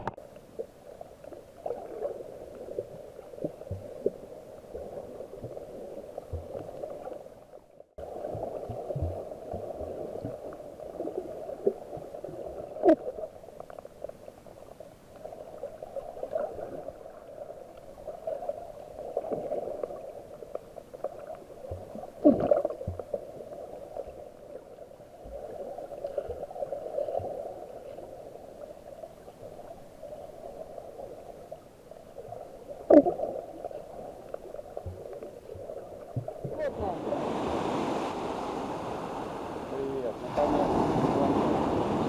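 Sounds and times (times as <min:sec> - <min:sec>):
underwater gurgling: 0:00.0 - 0:42.0
gurgling water swooshes: 0:25.0 - 0:42.0.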